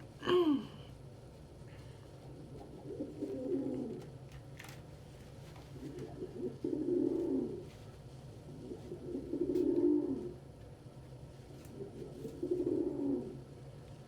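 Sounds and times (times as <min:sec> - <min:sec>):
faint steady hum: 0:00.0 - 0:14.0
pigeons cooing: 0:02.3 - 0:04.1, 0:05.7 - 0:07.7, 0:08.4 - 0:10.4, 0:11.7 - 0:13.6.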